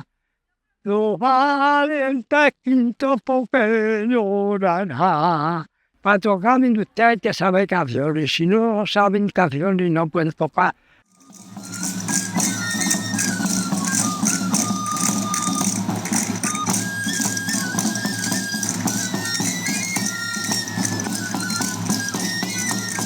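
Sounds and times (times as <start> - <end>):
pipe playing a melody: 11.2 - 23.0
rattling drum beat: 11.2 - 23.0.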